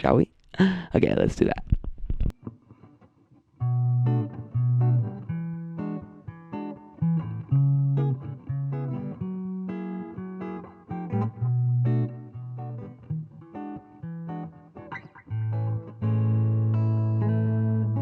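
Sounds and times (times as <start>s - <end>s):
guitar picked melody: 2.4s - 18.0s.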